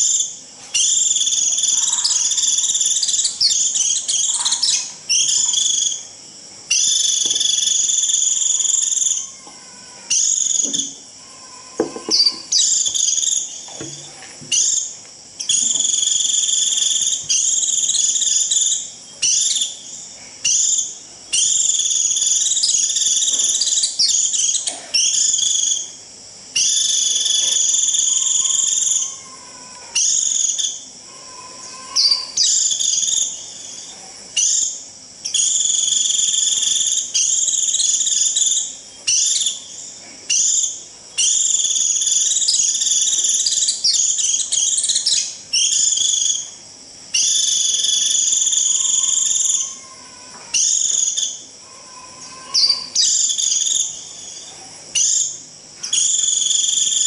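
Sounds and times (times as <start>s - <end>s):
bird giving shrill buzzy calls: 26.6s - 33.3s, 47.2s - 54.4s.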